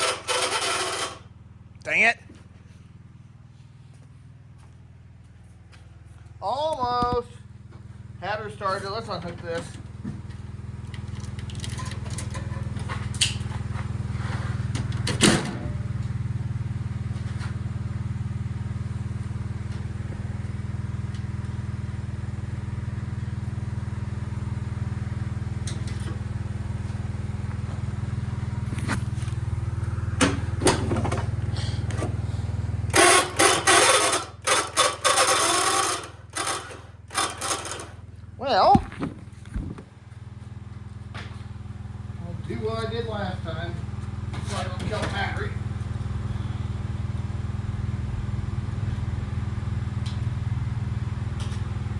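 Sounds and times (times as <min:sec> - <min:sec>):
loud clattering and scraping: 0:00.0 - 0:01.3, 0:08.8 - 0:15.7, 0:25.7 - 0:40.5, 0:43.8 - 0:46.1
garden tractor engine running: 0:00.0 - 0:51.9.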